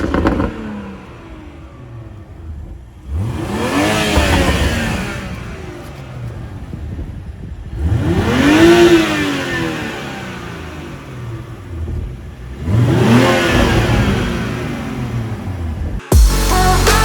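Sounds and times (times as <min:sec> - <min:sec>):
exhaust crackles and pops: 0:00.0 - 0:08.6
car engine revving: 0:00.0 - 0:17.0.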